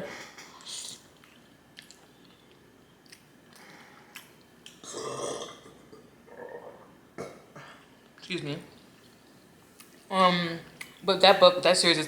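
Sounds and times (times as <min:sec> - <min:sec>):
person burping loudly: 0:04.8 - 0:07.7.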